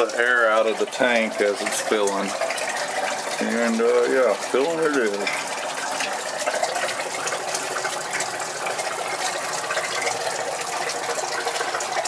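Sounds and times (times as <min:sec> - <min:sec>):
water rushing into tank: 0:00.0 - 0:12.0.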